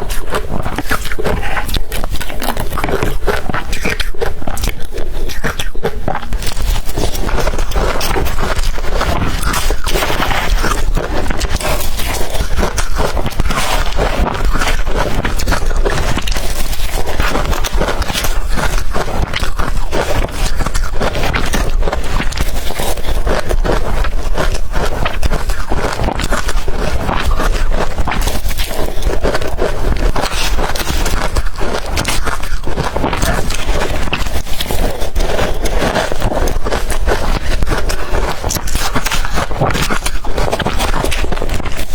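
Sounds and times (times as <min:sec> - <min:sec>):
crushed ice being chewed: 0:00.0 - 0:41.9.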